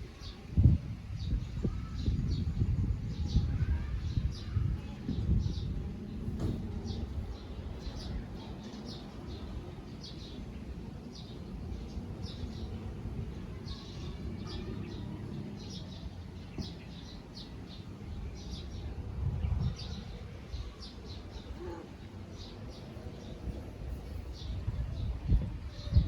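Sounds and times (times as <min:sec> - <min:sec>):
small birds chirping: 0:00.1 - 0:26.0.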